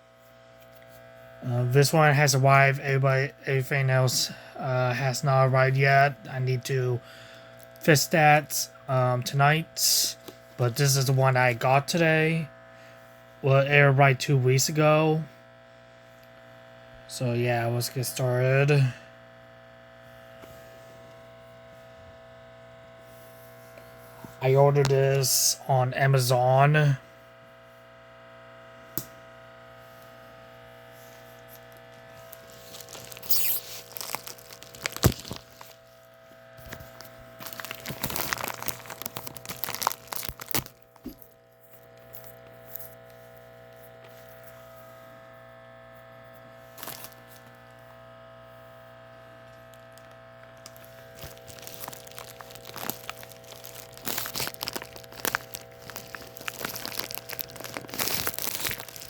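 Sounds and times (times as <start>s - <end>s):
steady electrical hum: 0.0s - 59.0s
packaging crinkling and tearing: 32.0s - 36.0s, 36.6s - 41.4s, 46.8s - 47.5s, 49.7s - 59.0s.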